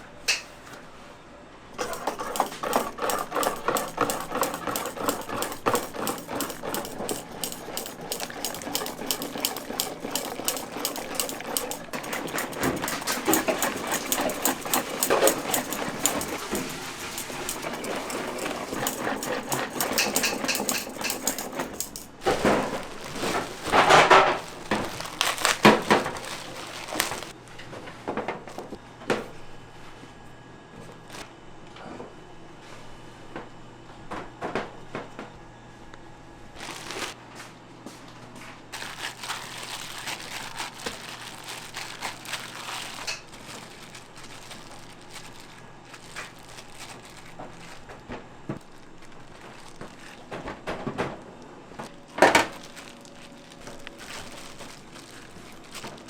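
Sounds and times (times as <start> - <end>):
kitchen clicks and taps: 0.3 - 0.6, 1.8 - 22.2.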